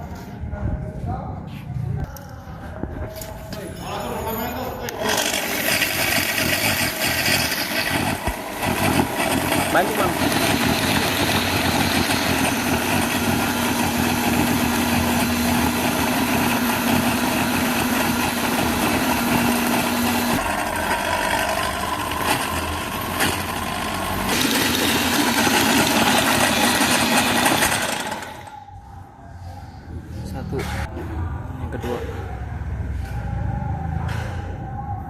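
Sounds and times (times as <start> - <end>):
small engine running: 5.0 - 28.6.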